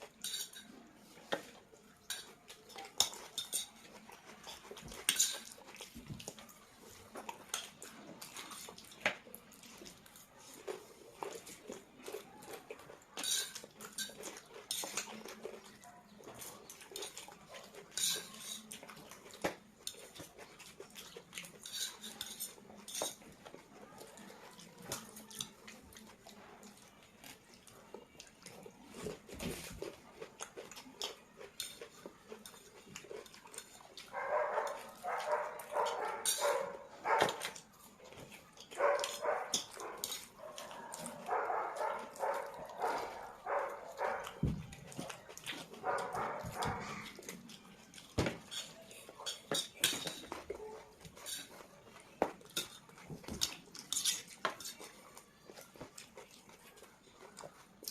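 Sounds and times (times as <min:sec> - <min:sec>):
cutlery clinking on dishes: 0:00.0 - 0:06.4, 0:07.1 - 0:09.2, 0:13.1 - 0:23.8, 0:30.6 - 0:56.1.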